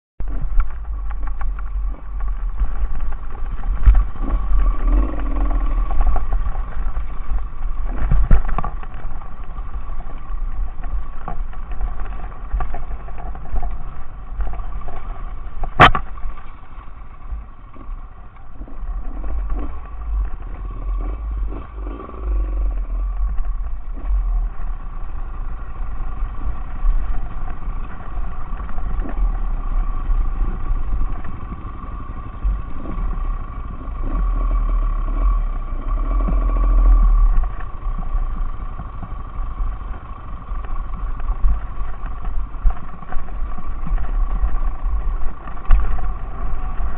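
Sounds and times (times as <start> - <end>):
motorcycle engine running: 0.2 - 46.9
scattered clatter: 0.2 - 46.9
wind rumble on microphone: 0.2 - 46.9.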